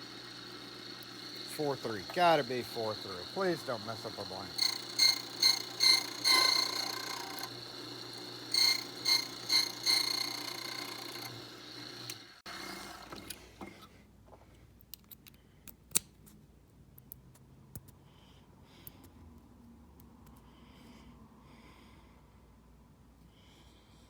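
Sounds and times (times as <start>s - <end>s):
key-cutting machine whine: 0.0s - 13.4s.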